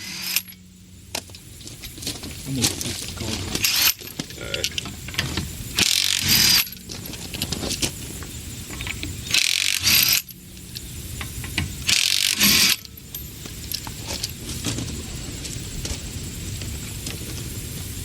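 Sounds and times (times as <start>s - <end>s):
impact wrench bursts: 0.0s - 0.7s, 3.5s - 4.8s, 5.7s - 7.0s, 8.8s - 10.4s, 11.8s - 13.3s.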